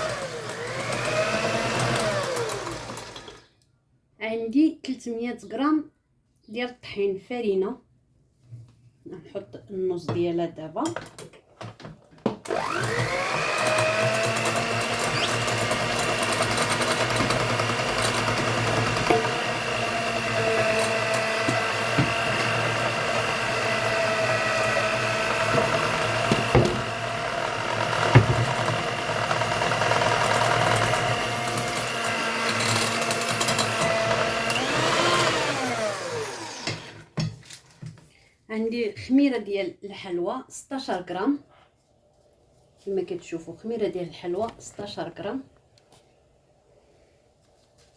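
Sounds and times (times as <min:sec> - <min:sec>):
electric mixer motor running: 0:00.0 - 0:03.4, 0:12.5 - 0:37.0
mixer beaters clicking: 0:00.0 - 0:03.4, 0:12.4 - 0:36.9.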